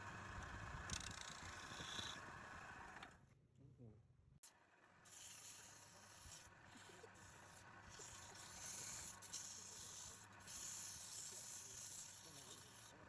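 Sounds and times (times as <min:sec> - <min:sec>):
hand sanding strokes: 0:08.0 - 0:13.0.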